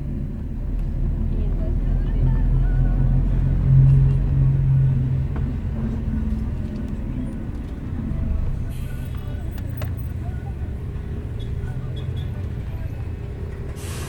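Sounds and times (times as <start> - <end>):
bus engine drone: 0.0 - 14.0
road rumble: 0.0 - 14.0
brief hiss: 13.8 - 14.0.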